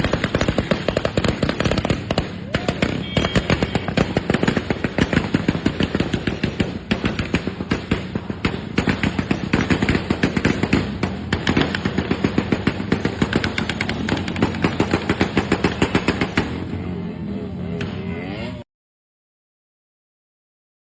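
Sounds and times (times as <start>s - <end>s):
motorcycle exhaust popping: 0.0s - 16.6s.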